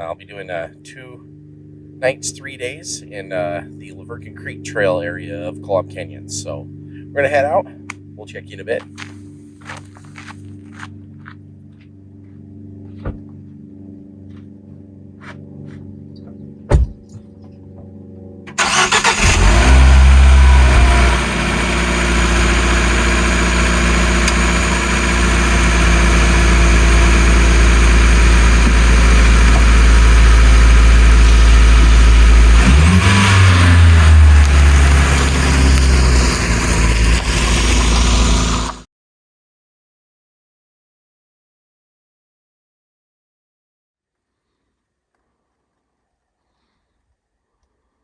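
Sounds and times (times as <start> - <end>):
loud thump: 13.0 - 13.2, 16.7 - 17.2
car engine cranking and idling: 18.5 - 38.8
engine revving: 18.5 - 38.8.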